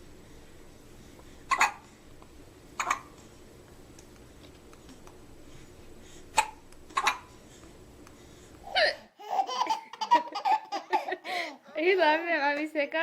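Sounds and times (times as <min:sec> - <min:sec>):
person hiccuping: 0:02.8 - 0:03.1.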